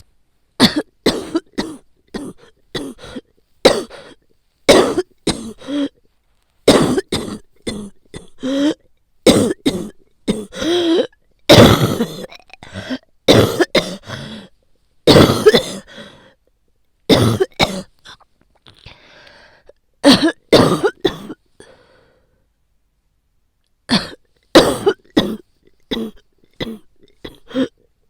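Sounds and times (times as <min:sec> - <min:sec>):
woman coughing harshly: 0:00.6 - 0:06.0, 0:06.7 - 0:14.3, 0:15.1 - 0:15.9, 0:17.1 - 0:18.2, 0:20.0 - 0:21.4, 0:23.9 - 0:27.8.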